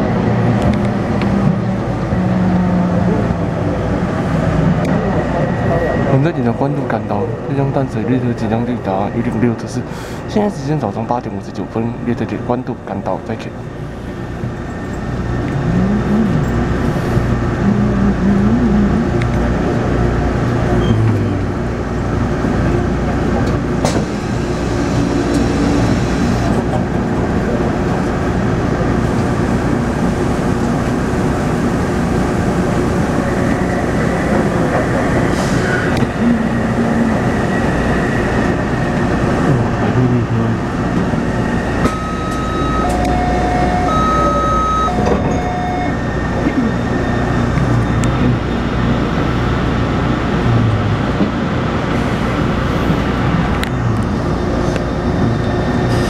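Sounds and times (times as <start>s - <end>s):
train inverter whine: 0.0s - 56.0s
train wheel and rail noise: 0.0s - 56.0s
two-pitch short beeps: 41.9s - 46.0s.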